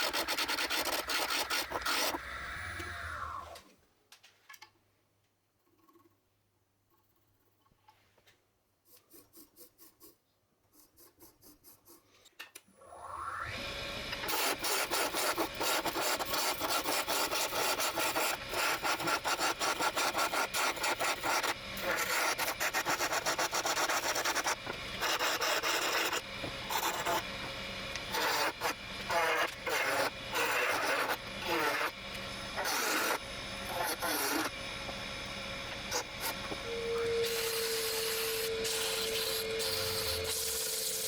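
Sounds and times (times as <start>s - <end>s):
wood lathe whine: 0.0s - 3.6s, 12.8s - 41.0s.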